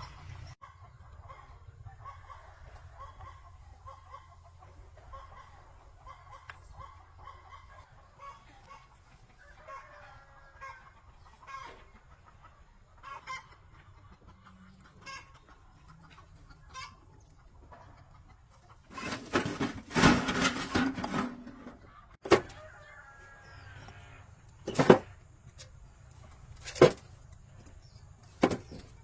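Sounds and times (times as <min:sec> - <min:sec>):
chickens clucking: 0:00.0 - 0:29.0
rooster crowing: 0:22.4 - 0:24.2.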